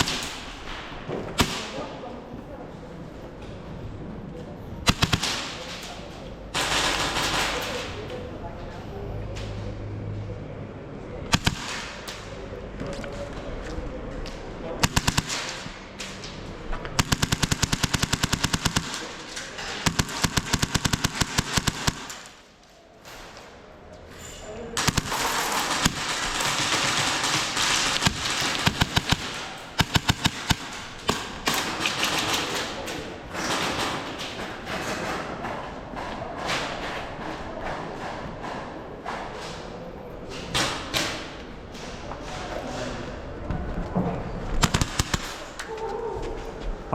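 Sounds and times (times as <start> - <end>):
airsoft guns firing full-auto: 0.0 - 1.8, 4.9 - 8.0, 11.3 - 12.5, 14.8 - 16.3, 17.0 - 22.4, 24.8 - 32.8, 44.6 - 45.6
single airsoft shots: 4.9 - 5.8, 11.3 - 12.4, 14.8 - 15.9, 17.0 - 19.2, 19.8 - 22.4, 27.5 - 31.6, 44.6 - 45.6.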